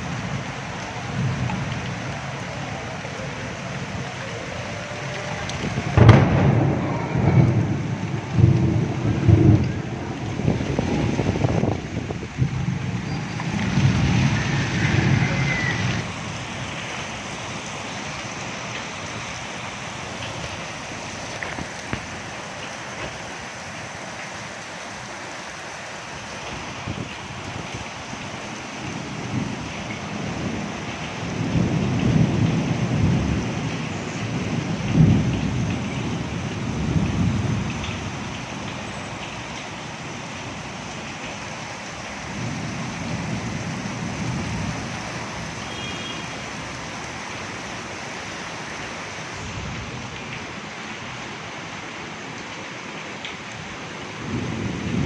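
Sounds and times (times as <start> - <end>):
steady rain falling: 0.0 - 55.0
thunder rolling: 3.8 - 16.2, 31.3 - 38.1.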